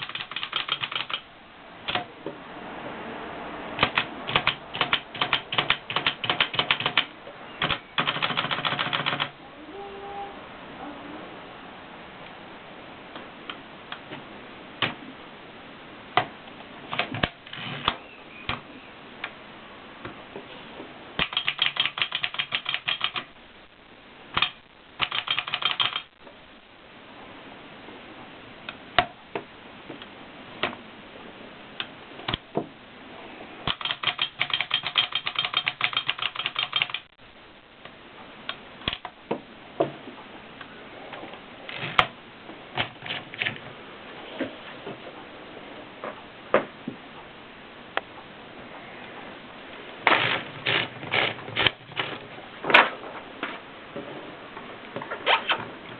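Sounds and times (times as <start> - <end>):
typewriter key clacks: 0.0 - 1.2, 3.8 - 9.3, 21.2 - 23.2, 24.4 - 26.1, 33.7 - 37.1.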